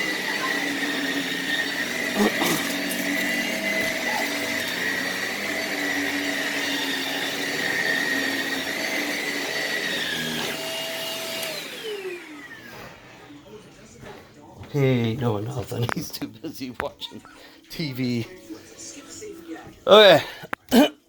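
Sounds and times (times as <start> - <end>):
vacuum cleaner motor whine: 0.0 - 13.7.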